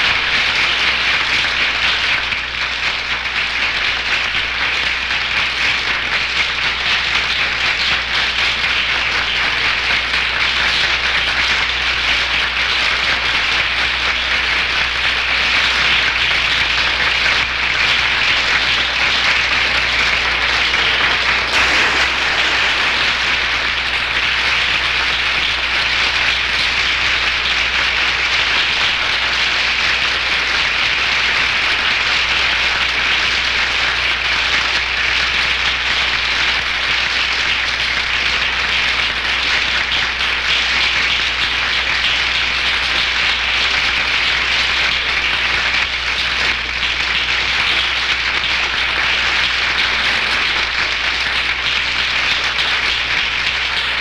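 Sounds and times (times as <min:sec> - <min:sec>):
audience applauding: 0:13.2 - 0:54.0.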